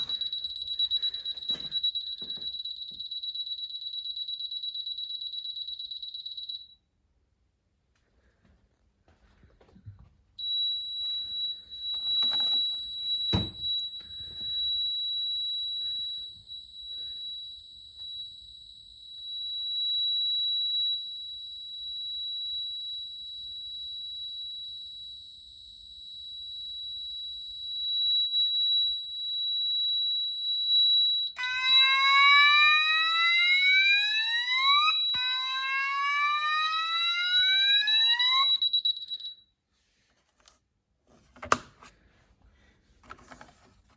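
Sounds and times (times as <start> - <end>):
high-pitched alarm tone: 0.0 - 6.8, 10.4 - 39.4
rising whoop alarm: 31.4 - 38.7.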